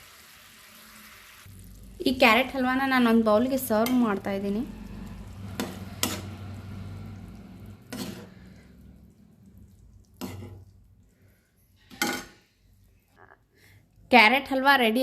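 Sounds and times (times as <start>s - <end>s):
spoon scraping and clinking pan: 5.6s - 6.4s, 7.9s - 8.5s, 11.8s - 12.5s.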